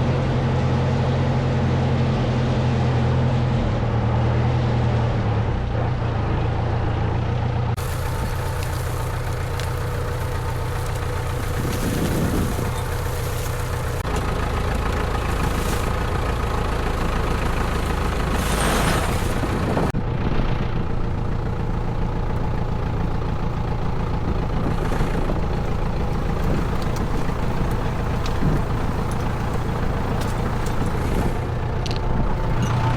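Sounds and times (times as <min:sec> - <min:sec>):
tractor engine running: 0:00.0 - 0:32.9.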